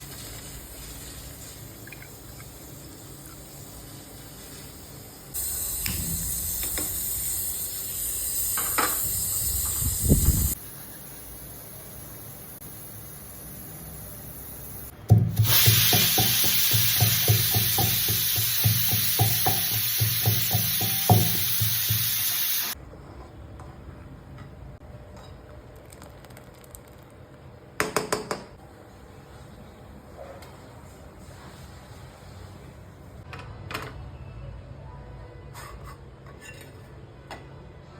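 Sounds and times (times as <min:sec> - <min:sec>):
food sizzling in a hot pan: 0:03.8 - 0:22.8.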